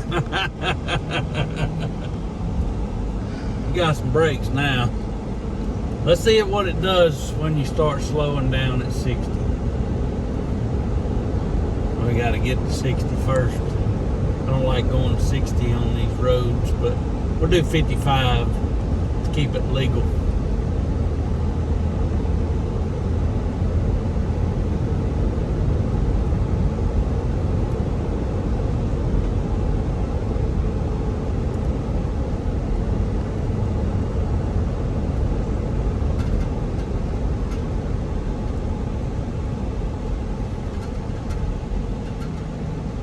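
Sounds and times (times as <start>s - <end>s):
car cabin road and engine noise: 0.0s - 43.0s.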